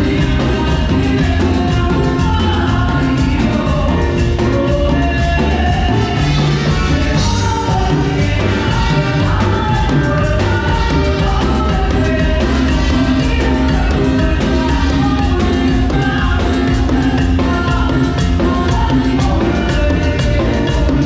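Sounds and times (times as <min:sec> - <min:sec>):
live band playing: 0:00.0 - 0:21.0
person singing: 0:00.0 - 0:21.0
steady drum beat: 0:00.0 - 0:21.0.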